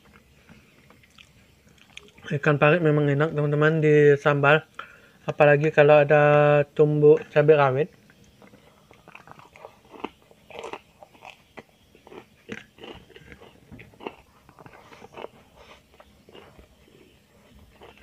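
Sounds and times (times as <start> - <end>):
person chewing and biting: 0.0 - 2.2, 8.1 - 18.0.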